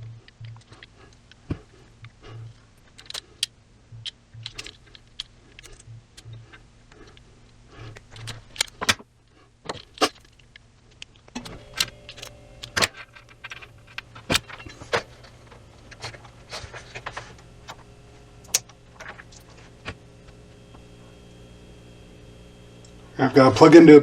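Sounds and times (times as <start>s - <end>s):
metallic clicks of crimping tool: 2.9s - 7.2s, 7.9s - 9.0s, 18.4s - 19.4s.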